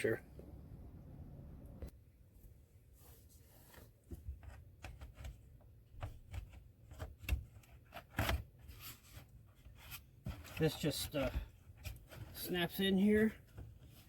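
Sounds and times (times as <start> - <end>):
scrape: 2.9 - 3.9.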